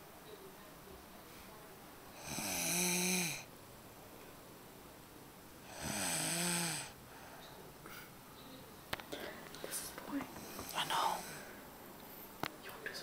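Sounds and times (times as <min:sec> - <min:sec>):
person snoring: 0:02.2 - 0:03.5, 0:05.6 - 0:07.0, 0:10.4 - 0:11.5.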